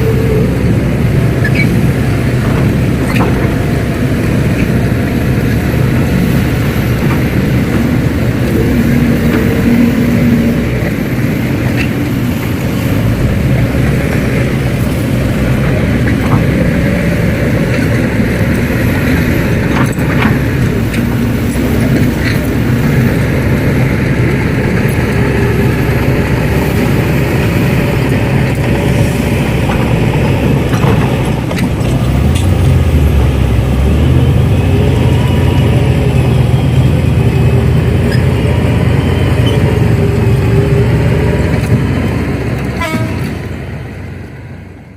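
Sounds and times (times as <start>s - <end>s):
model excavator engine drone: 0.0s - 44.9s.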